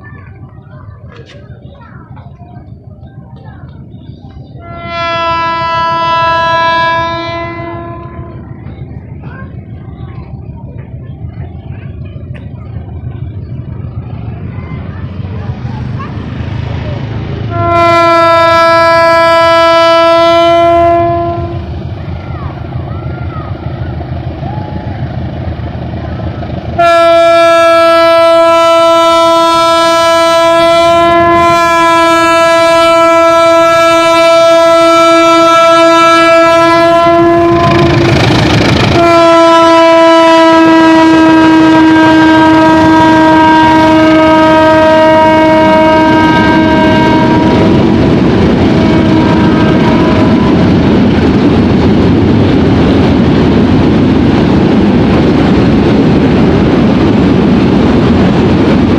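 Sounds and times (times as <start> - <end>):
locomotive air horn blasts: 4.6 - 8.4, 17.5 - 21.7, 26.8 - 38.1, 38.8 - 47.8, 48.6 - 50.8
train wheels clacking over rail joints: 37.2 - 40.3.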